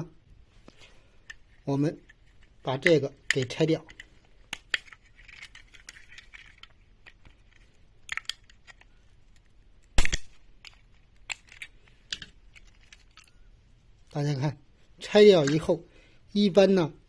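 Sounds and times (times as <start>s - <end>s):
plastic clicks and scrapes: 0.7s - 9.5s
plastic piece snapping: 2.0s - 13.3s.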